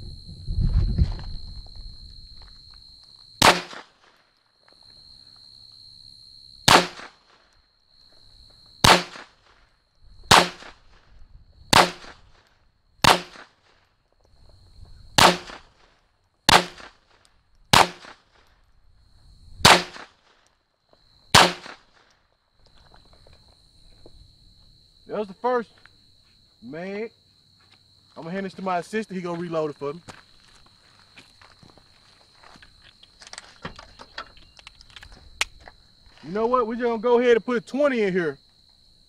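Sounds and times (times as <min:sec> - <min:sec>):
pistol shots: 0:03.4 - 0:04.0, 0:06.7 - 0:07.3, 0:08.8 - 0:09.4, 0:10.3 - 0:10.8, 0:11.7 - 0:12.2, 0:13.0 - 0:13.6, 0:15.2 - 0:15.9, 0:16.5 - 0:18.3, 0:19.6 - 0:20.3, 0:21.3 - 0:22.0.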